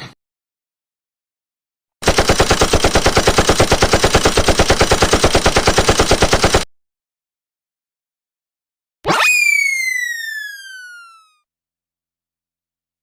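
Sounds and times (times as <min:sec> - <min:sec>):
machine gun burst: 0:02.0 - 0:06.7.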